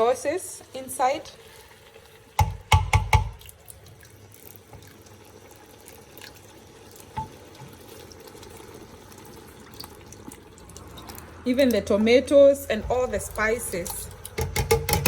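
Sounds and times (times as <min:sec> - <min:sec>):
sauce pouring into pan: 0:01.2 - 0:11.4
knock: 0:02.4 - 0:03.3.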